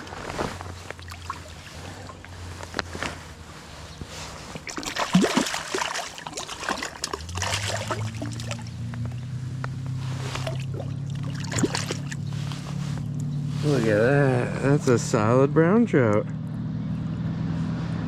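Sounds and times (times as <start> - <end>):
low steady hum: 0.0 - 16.2
fish splashing in water: 0.8 - 2.5, 4.2 - 9.4, 10.0 - 12.6.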